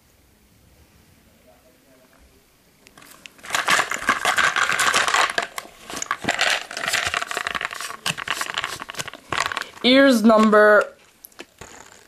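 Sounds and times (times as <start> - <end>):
plastic packaging crinkling: 2.9 - 12.0
small plastic toys clicking: 3.0 - 12.0.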